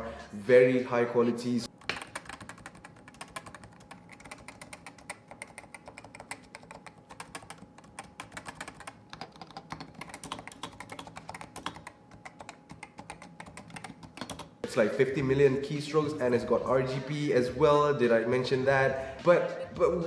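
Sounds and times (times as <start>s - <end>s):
fast keyboard typing: 1.7s - 14.6s.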